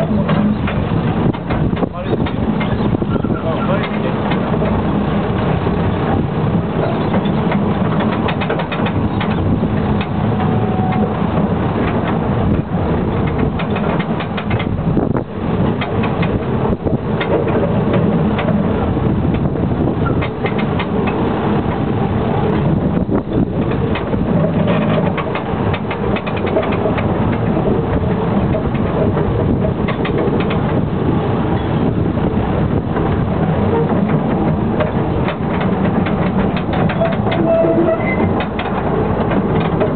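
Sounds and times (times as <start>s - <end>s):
train rumbling: 0.0s - 39.9s
rattling clicks: 7.1s - 10.2s, 13.2s - 14.8s, 15.7s - 16.4s, 19.3s - 21.8s, 23.4s - 27.6s, 28.5s - 30.8s, 33.0s - 39.9s.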